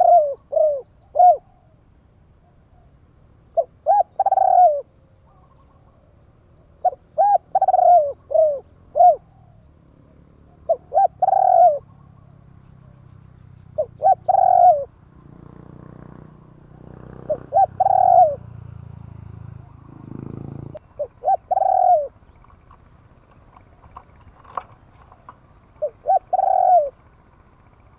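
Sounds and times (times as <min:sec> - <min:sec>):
dove cooing: 0:00.0 - 0:01.8, 0:03.5 - 0:09.7, 0:10.5 - 0:12.3, 0:13.7 - 0:15.0, 0:16.7 - 0:18.6, 0:19.6 - 0:27.8.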